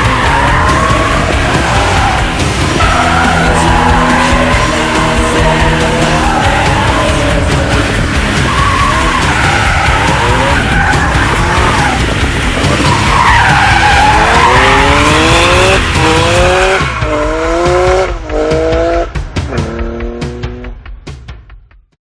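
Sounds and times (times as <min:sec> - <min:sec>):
tyres squealing: 0:00.0 - 0:17.0
car engine accelerating hard: 0:00.0 - 0:20.8.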